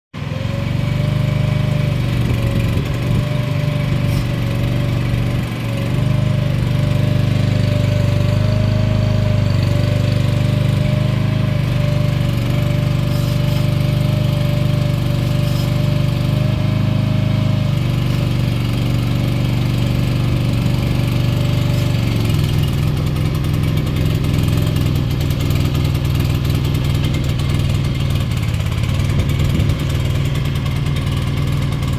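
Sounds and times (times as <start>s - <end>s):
small engine running: 0.2s - 31.9s
thin whine: 11.4s - 18.4s.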